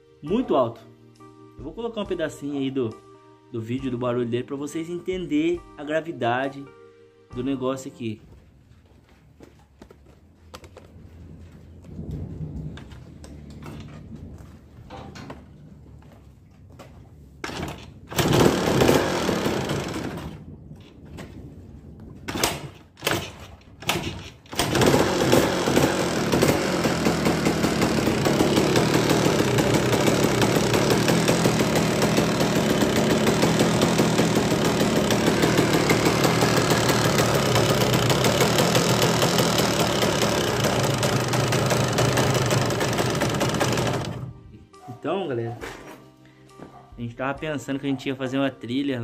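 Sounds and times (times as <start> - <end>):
motorcycle engine sputtering and running: 10.5 - 20.9, 23.0 - 44.3
loud knocking inside engine: 18.1 - 20.3, 24.5 - 44.2.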